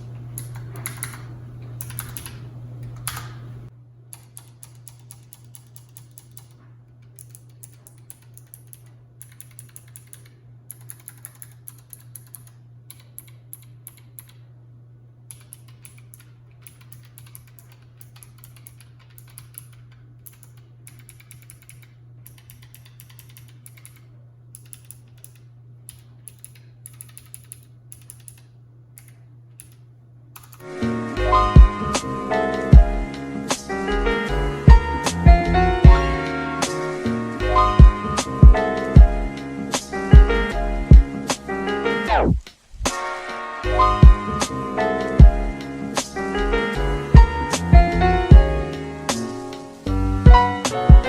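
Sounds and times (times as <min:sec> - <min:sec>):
low background hum: 0:00.0 - 0:51.0
loud music: 0:30.6 - 0:51.0.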